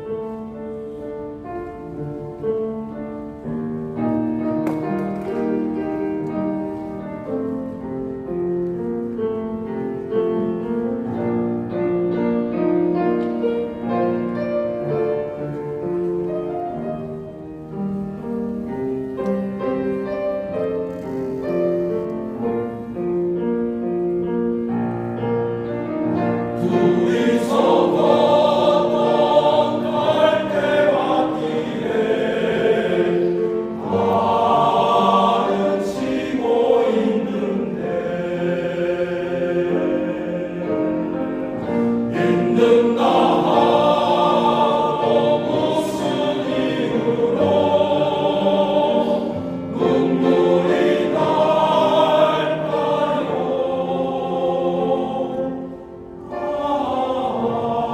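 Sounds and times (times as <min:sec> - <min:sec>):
men's choir singing: 0:26.2 - 0:57.9.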